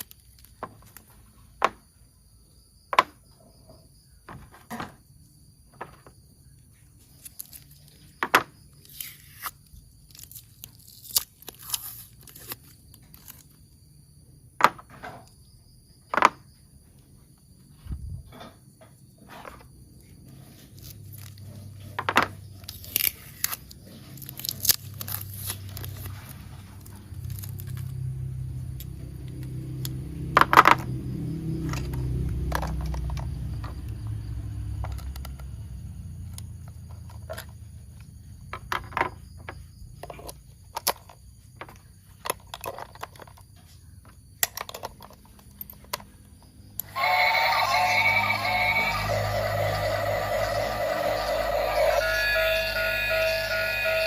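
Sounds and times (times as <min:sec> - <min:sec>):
plastic toy parts clicking: 0:44.4 - 0:46.1
low hum: 0:46.8 - 0:54.0
music: 0:46.9 - 0:54.0.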